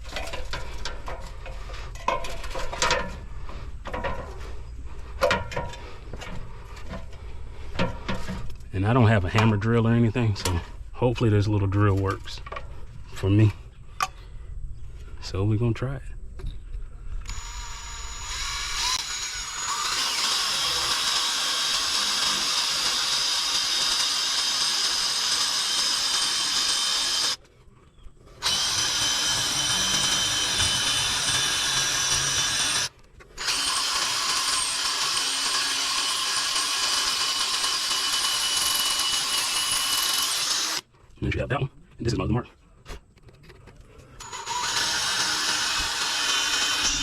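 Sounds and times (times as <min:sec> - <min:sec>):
cordless drill drilling into brick: 0:17.2 - 0:27.4, 0:28.4 - 0:40.9, 0:44.2 - 0:47.0.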